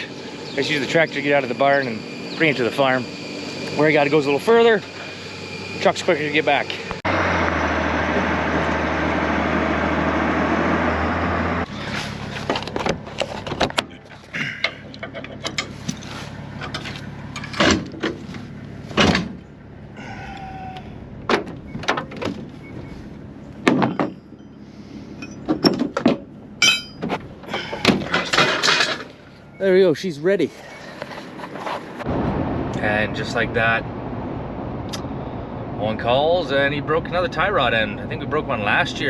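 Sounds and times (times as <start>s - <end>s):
pickup truck engine running: 0.0s - 20.1s
sharp knocks and clunks: 18.9s - 19.4s, 21.3s - 22.5s, 23.6s - 24.4s, 25.4s - 29.1s.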